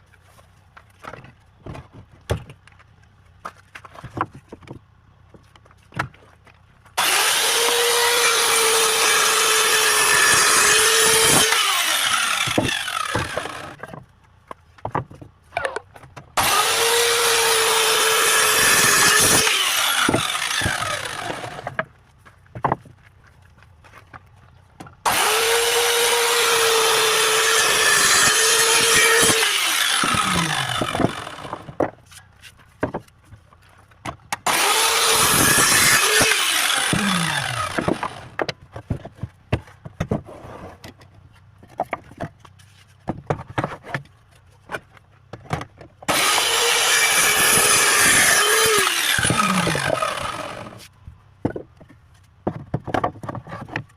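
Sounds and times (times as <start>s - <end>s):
wood being handled: 0.0s - 8.8s, 10.3s - 17.1s, 18.7s - 25.4s, 26.0s - 53.9s
electric saw cutting wood: 7.0s - 13.8s, 16.4s - 21.8s, 25.0s - 31.8s, 34.4s - 38.4s, 46.1s - 50.9s.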